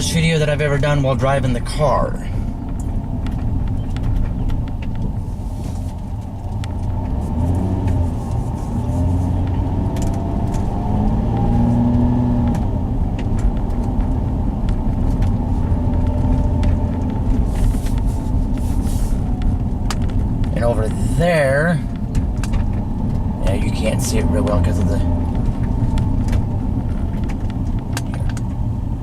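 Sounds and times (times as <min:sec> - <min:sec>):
car engine and tyres rumbling: 0:00.0 - 0:29.0
small clicks and knocks: 0:02.6 - 0:05.2, 0:05.8 - 0:20.6, 0:21.9 - 0:23.3, 0:24.8 - 0:28.6.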